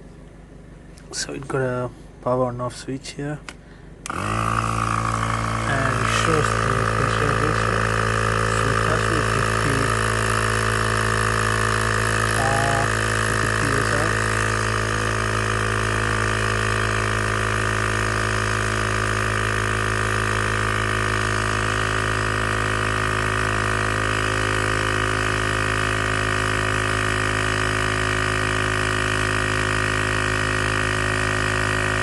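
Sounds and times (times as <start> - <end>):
air compressor buzzing: 3.4 - 32.0.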